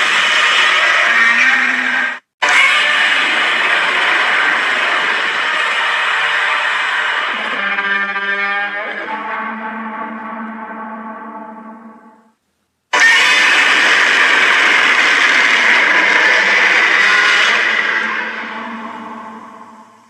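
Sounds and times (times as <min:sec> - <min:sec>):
monster roar: 0:13.0 - 0:19.9.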